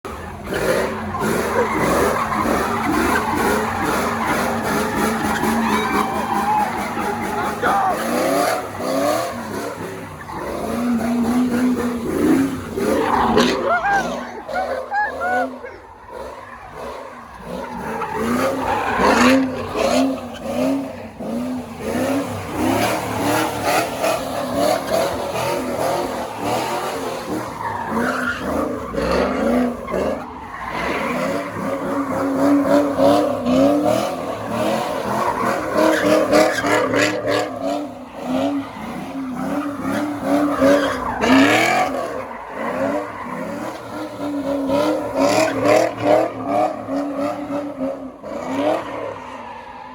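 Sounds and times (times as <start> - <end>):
car engine at high revs: 0.0 - 49.9
tyres squealing: 0.2 - 20.9.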